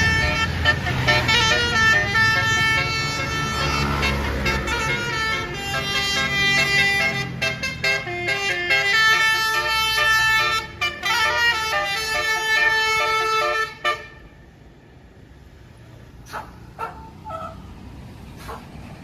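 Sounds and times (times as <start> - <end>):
bus horn playing a tune: 0.0 - 14.5.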